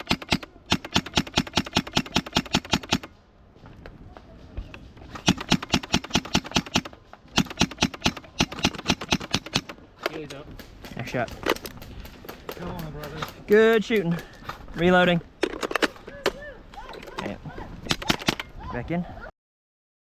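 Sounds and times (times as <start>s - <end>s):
airsoft rifle firing bursts: 0.0s - 3.2s, 5.1s - 9.8s.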